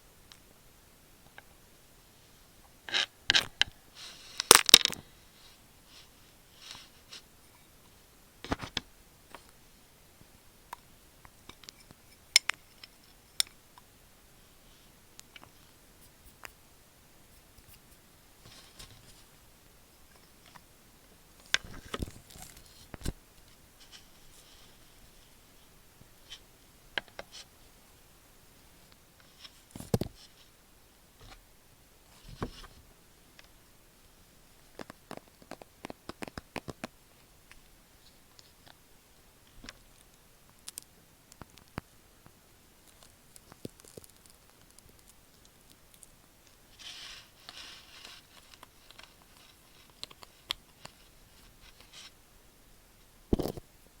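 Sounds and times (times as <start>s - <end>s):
scratchy rustle: 17.3s - 19.4s, 46.7s - 52.2s.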